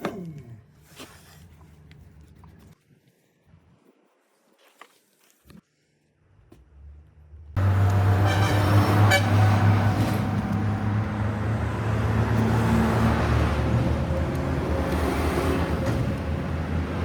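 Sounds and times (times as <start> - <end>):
vehicle engine humming: 6.7 - 17.0.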